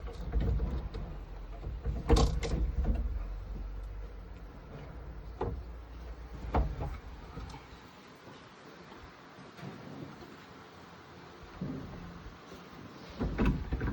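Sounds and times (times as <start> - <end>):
power window mechanism clunking: 0.0 - 7.4
low steady hum: 0.0 - 13.9.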